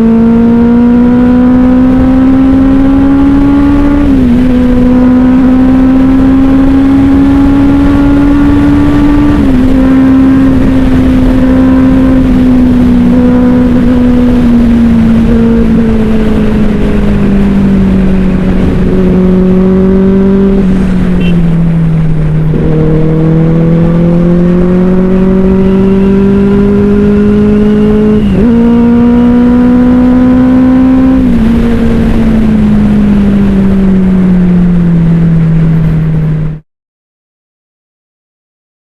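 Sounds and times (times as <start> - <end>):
motorcycle engine running: 0.0 - 36.6.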